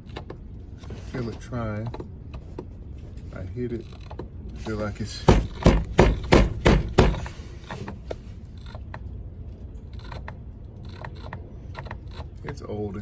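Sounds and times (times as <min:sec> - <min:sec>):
sharp knocks on motor: 0:04.6 - 0:08.2.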